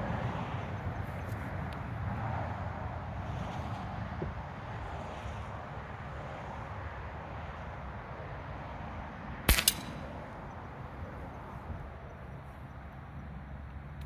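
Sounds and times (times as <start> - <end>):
air pistol shot pop: 9.5 - 10.1
second crack: 9.5 - 10.1.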